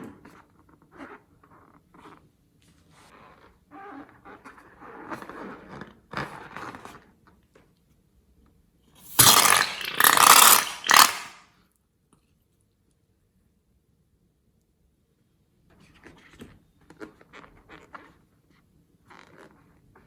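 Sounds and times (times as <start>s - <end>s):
loud slime squelching: 9.1s - 11.4s
slime squishing and scraping: 9.1s - 11.4s.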